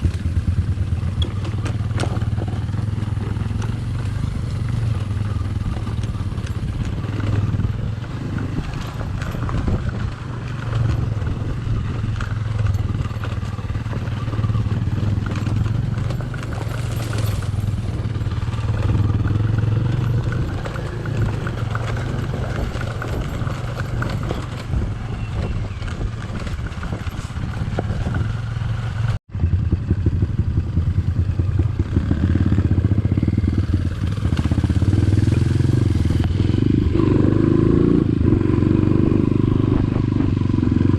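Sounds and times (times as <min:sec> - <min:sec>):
knocks and rattles: 0:00.0 - 0:29.0
motorcycle engine running: 0:00.0 - 0:40.9.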